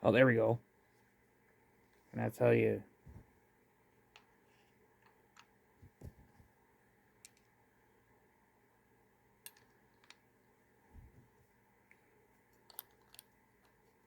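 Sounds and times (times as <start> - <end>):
plastic parts clicking: 9.4 - 10.2, 12.6 - 13.8.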